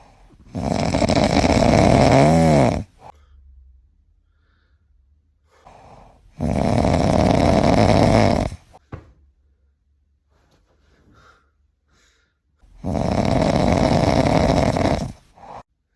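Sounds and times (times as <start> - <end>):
faint breath: 0.0 - 0.7, 2.8 - 6.4, 8.4 - 12.9
loud snoring: 0.0 - 3.1, 5.7 - 8.8, 12.7 - 15.6.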